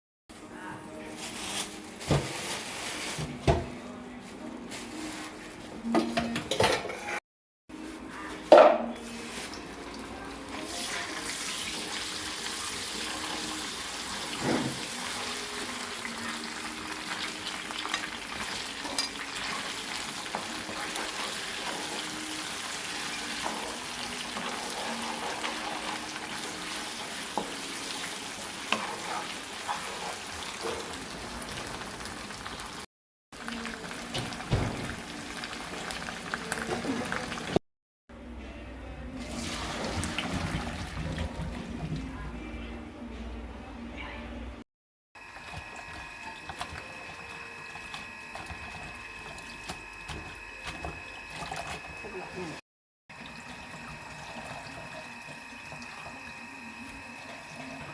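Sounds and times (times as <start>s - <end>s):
food sizzling in oil: 9.0s - 37.6s.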